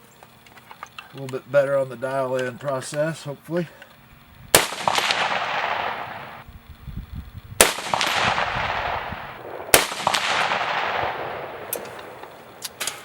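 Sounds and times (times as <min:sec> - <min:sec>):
rifle shots: 0:04.5 - 0:06.4, 0:07.6 - 0:12.6
rolling echo of gunshot: 0:04.5 - 0:06.4, 0:07.6 - 0:12.2.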